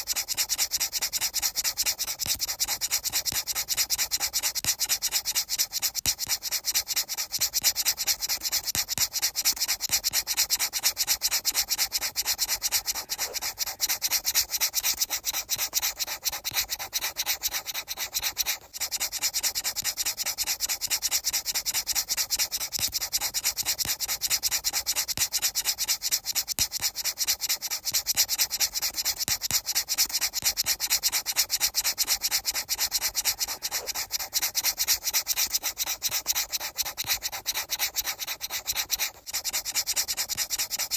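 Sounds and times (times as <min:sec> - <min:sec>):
rhythmic rubbing strokes: 0:00.0 - 0:01.3, 0:04.3 - 0:19.3, 0:26.8 - 0:40.9.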